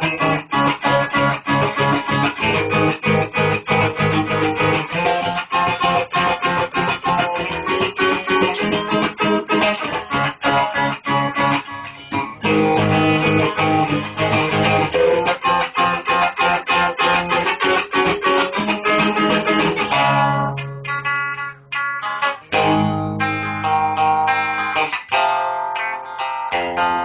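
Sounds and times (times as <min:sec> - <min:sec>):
guitar picked and strummed: 0:00.0 - 0:27.0.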